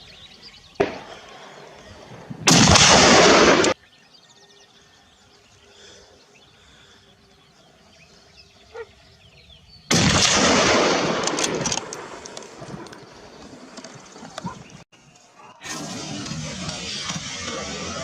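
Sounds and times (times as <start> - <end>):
loud gunshot with echo: 0.8 - 1.2, 2.4 - 3.8, 9.9 - 11.2.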